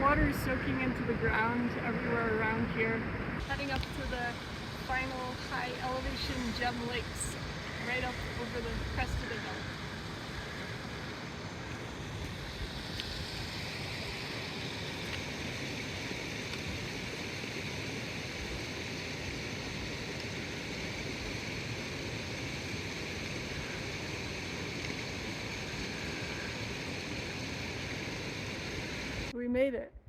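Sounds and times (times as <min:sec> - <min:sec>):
wind buffeting microphone: 0:00.0 - 0:17.0
rushing hiss: 0:03.2 - 0:29.3.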